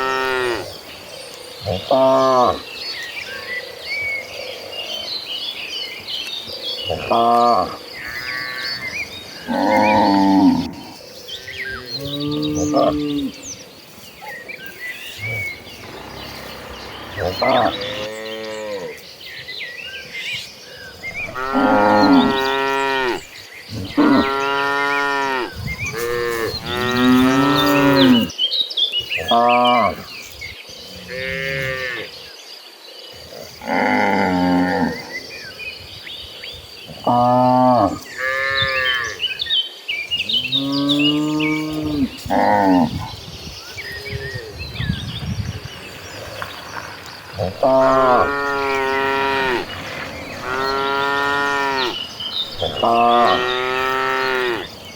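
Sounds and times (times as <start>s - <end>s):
cattle mooing: 15.2s - 19.0s, 21.2s - 23.2s, 23.9s - 28.3s, 47.4s - 54.8s.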